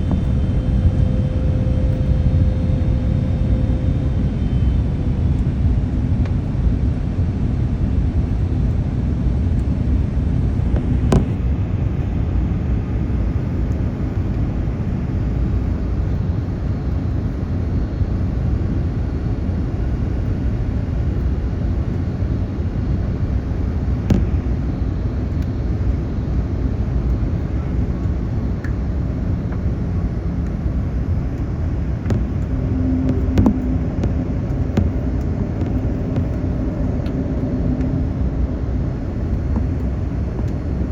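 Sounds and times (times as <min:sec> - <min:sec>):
airplane cabin engine rumble: 0:00.0 - 0:40.9.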